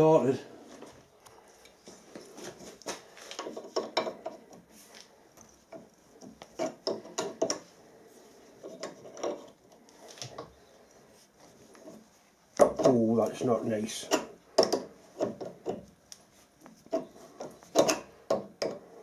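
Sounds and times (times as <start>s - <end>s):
hand tap creaking and clicking: 5.7s - 7.7s, 14.1s - 18.8s.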